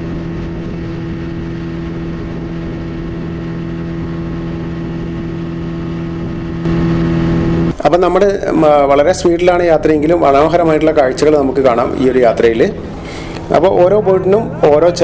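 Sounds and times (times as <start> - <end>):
speed boat engine: 0.0 - 7.8, 8.4 - 15.0.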